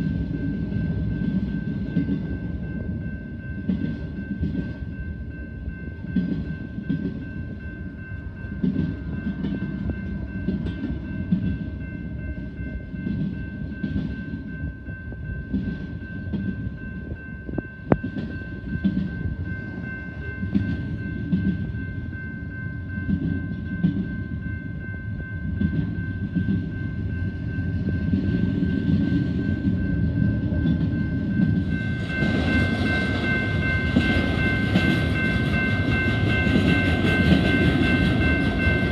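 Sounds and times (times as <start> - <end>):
train low rumble: 0.0 - 38.9
train wheels clattering: 25.5 - 38.9.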